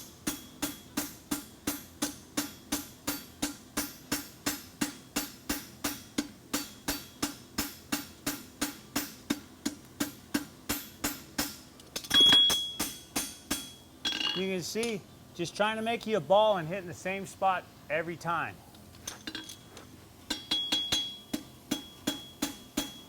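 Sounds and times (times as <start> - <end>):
hammer ringing on anvil: 10.0 - 14.5, 20.3 - 23.0.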